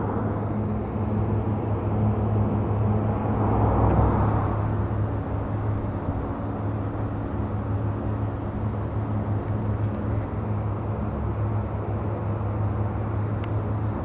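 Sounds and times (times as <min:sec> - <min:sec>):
car engine drone: 0:00.0 - 0:07.1
tyre road noise: 0:00.0 - 0:09.7.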